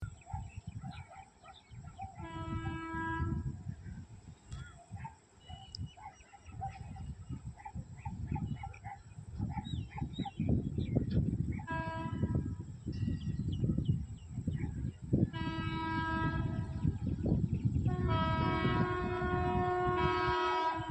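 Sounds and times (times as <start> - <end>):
birds chirping: 0.0 - 2.9, 4.4 - 12.2
low train rumble: 1.8 - 5.3, 10.4 - 20.9
train horn blast: 2.2 - 3.6, 11.6 - 12.7, 15.3 - 20.9.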